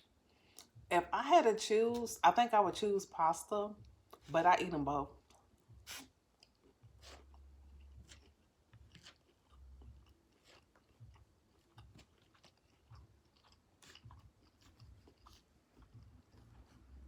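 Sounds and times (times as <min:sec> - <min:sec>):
person chewing food: 0:00.1 - 0:00.9, 0:03.8 - 0:04.3, 0:05.1 - 0:17.0.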